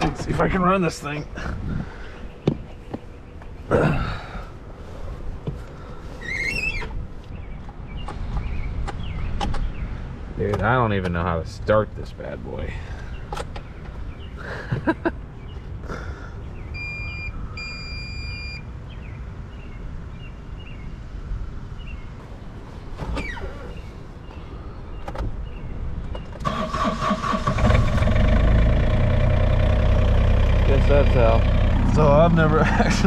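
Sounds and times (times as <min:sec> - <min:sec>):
excavator engine cranking and running: 0:26.4 - 0:31.9.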